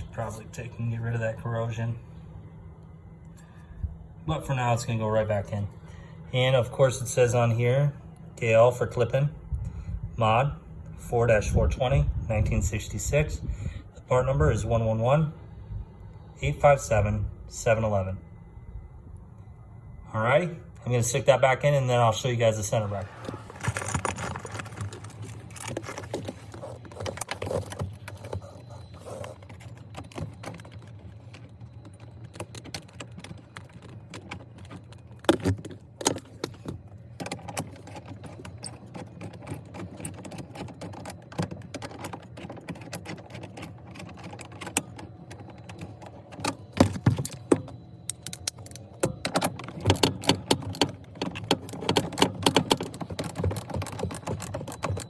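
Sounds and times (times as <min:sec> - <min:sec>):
metal bolt and washers clinking: 0:23.0 - 0:55.0.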